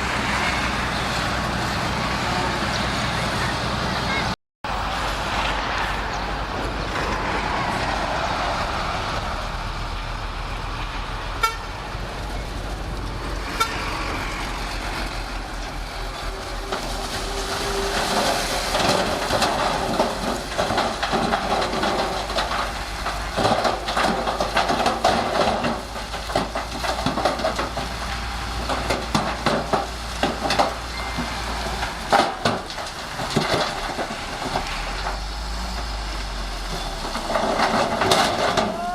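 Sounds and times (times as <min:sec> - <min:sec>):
bulldozer diesel engine: 0:00.0 - 0:38.9
clanking and rattling: 0:16.6 - 0:35.8, 0:36.7 - 0:38.8.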